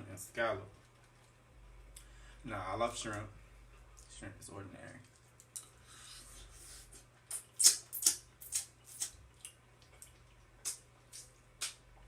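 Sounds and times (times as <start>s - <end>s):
sharp eating clicks and crackles: 7.3s - 11.8s.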